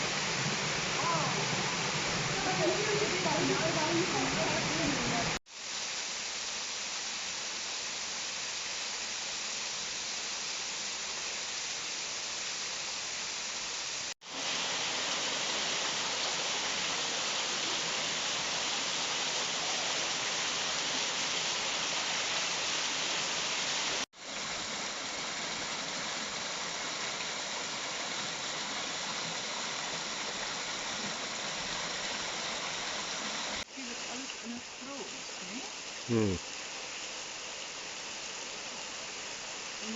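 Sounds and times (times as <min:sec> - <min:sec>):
waterfall rushing: 0:00.0 - 0:05.4, 0:14.2 - 0:36.4.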